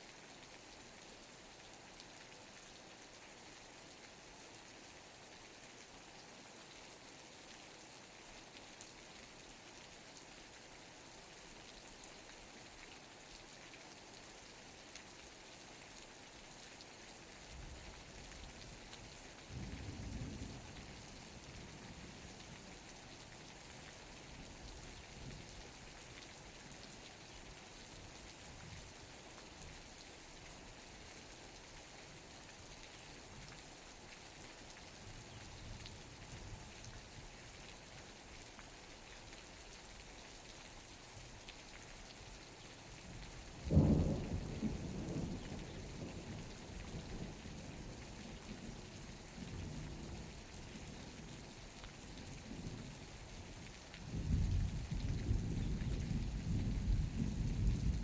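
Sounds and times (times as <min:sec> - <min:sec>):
steady rain: 0:00.0 - 0:58.0
distant thunder rumble: 0:43.7 - 0:45.4.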